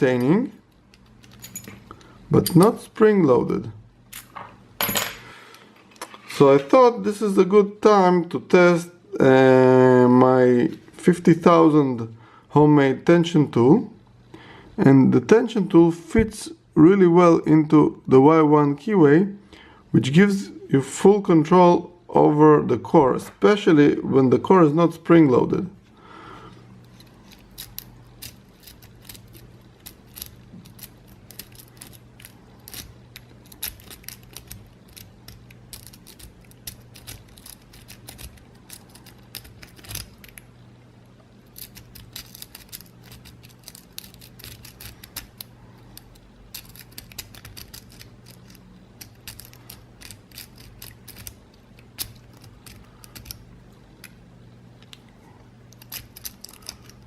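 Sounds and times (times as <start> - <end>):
low steady hum: 0.0 - 57.0
lock pick clicking and scraping: 26.8 - 40.4, 41.6 - 53.4, 55.7 - 57.0.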